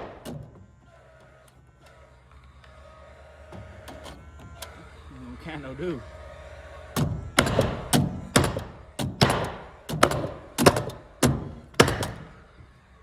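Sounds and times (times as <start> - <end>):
nails hammered into wood: 0.0 - 0.6, 7.0 - 12.5.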